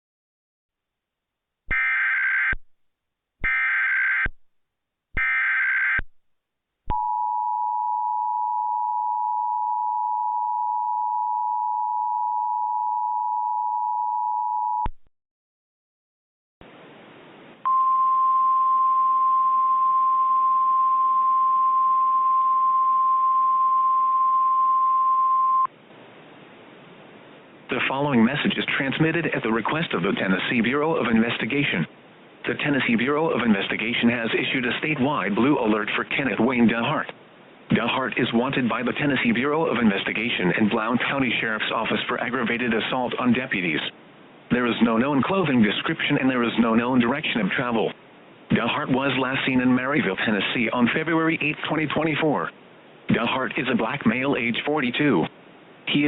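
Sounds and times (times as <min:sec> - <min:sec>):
two-tone attention signal: 0:17.7 - 0:25.7.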